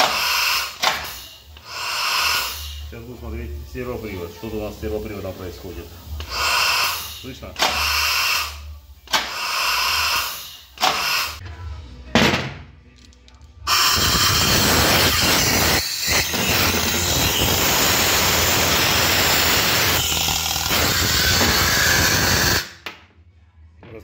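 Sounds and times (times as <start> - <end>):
compressed air hissing: 0.0 - 3.1, 3.8 - 11.4.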